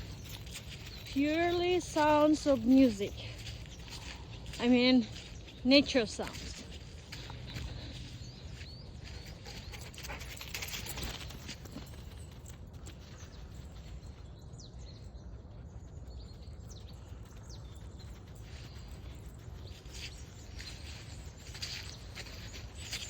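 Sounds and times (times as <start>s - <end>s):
birds chirping: 0.0s - 23.0s.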